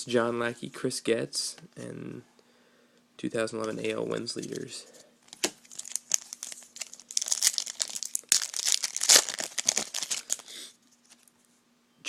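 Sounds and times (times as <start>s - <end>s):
plastic wrapper tearing and crinkling: 5.3s - 11.2s.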